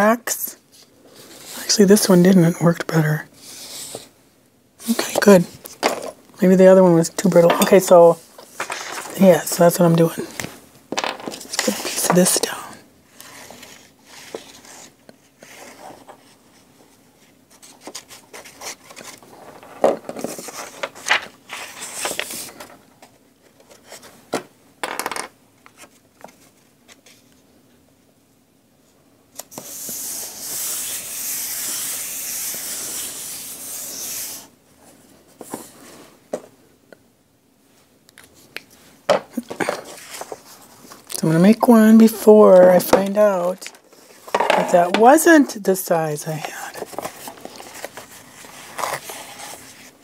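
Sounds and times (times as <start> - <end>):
paper rustling: 8.1 - 9.6, 10.2 - 12.5, 17.2 - 24.1, 39.4 - 41.1, 46.4 - 50.0
paper scraping rub: 29.5 - 34.5.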